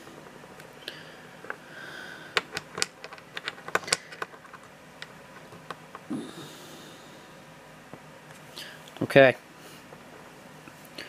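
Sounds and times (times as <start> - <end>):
small plastic parts clicking: 2.4 - 6.1.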